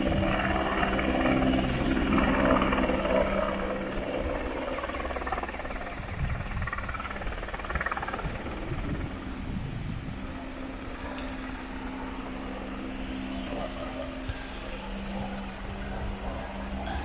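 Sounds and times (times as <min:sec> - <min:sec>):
engine drone: 0:00.0 - 0:17.0.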